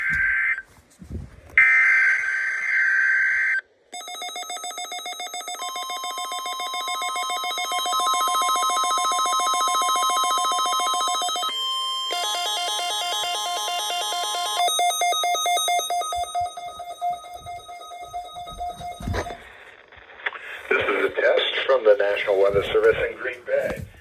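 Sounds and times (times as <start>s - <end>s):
alternating alarm pattern: 1.6s - 19.7s
steady warning alarm tone: 1.6s - 19.8s
alert radios beeping rapidly: 4.0s - 19.6s.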